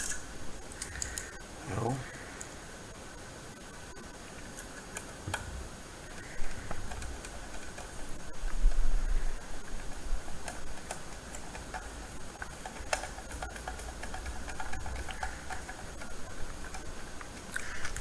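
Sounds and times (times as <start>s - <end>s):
screwdriver clicking on screws: 0.0s - 0.2s, 9.9s - 18.0s.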